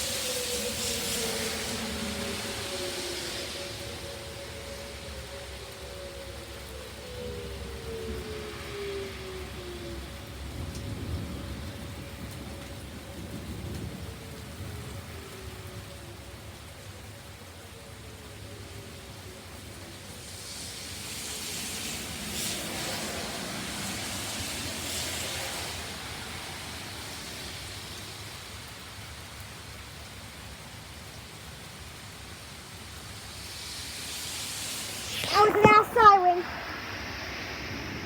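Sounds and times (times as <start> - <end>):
distant warning siren: 0.0 - 29.5
steady rain: 0.0 - 38.0.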